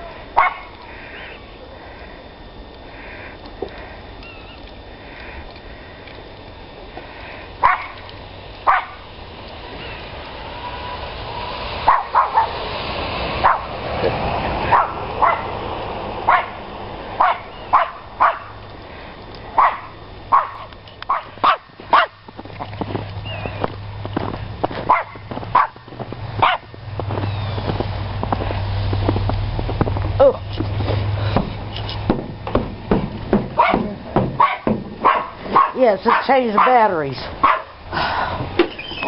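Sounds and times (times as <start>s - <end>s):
dog barking: 0.4s - 0.7s, 7.6s - 8.0s, 8.6s - 9.0s, 11.8s - 12.6s, 13.4s - 13.7s, 14.6s - 15.5s, 16.3s - 16.6s, 17.2s - 18.6s, 19.6s - 22.2s, 24.9s - 25.8s, 26.4s - 26.7s, 33.6s - 37.8s.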